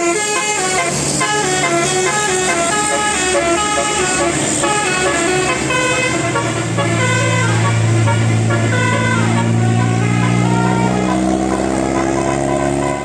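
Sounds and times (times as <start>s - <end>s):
musical bus horn melody: 0.0s - 13.0s.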